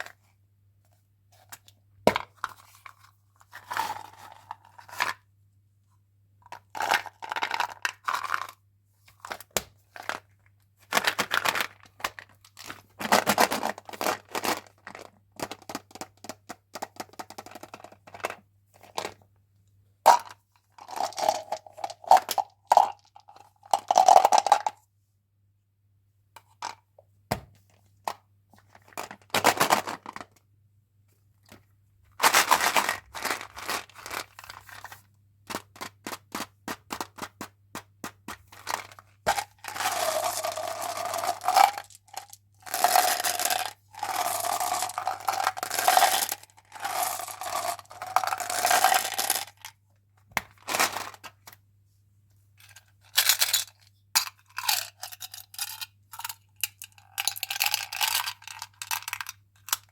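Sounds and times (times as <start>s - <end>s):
wrapper crinkling and tearing: 32.2s - 35.0s, 38.6s - 43.4s, 50.5s - 51.4s.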